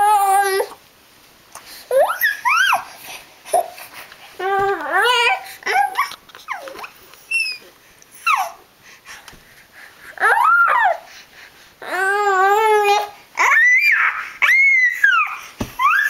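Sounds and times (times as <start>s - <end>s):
baby squealing and whining: 0.0s - 0.8s, 1.9s - 3.8s, 4.4s - 8.6s, 10.2s - 11.1s, 11.8s - 16.0s.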